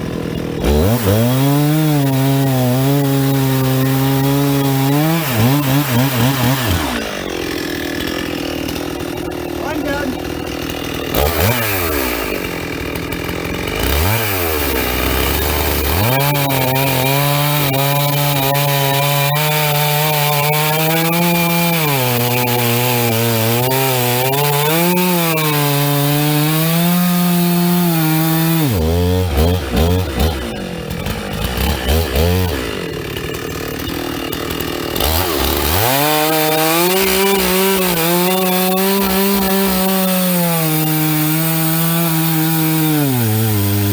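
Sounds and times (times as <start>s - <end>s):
chainsaw cutting wood: 0.0s - 43.9s.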